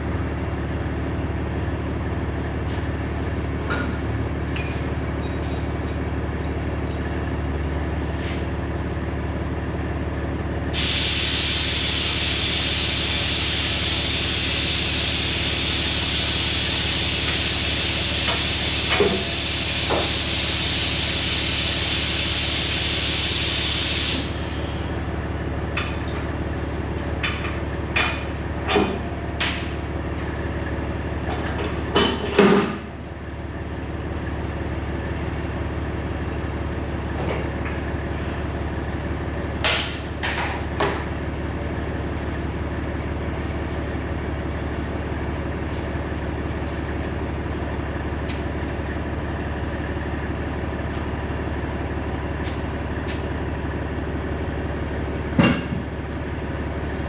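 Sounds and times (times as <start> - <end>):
diesel truck idling: 5.9 - 31.9, 32.9 - 57.0
compressed air hissing: 10.8 - 24.4.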